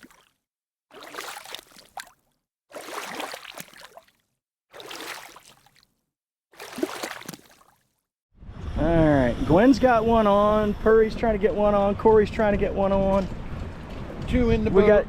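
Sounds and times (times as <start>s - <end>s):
water splashing and rushing: 0.0s - 5.9s, 6.5s - 7.8s.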